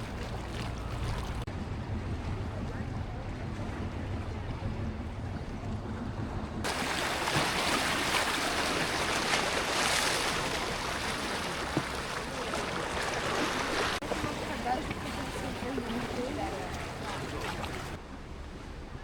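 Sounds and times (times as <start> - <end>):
waves rushing: 0.0 - 1.5, 6.6 - 18.0
wind: 0.0 - 19.0.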